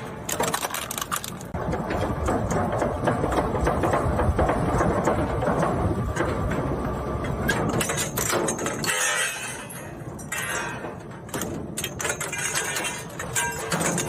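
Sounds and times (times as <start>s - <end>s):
plastic cracking and snapping: 0.3s - 1.6s.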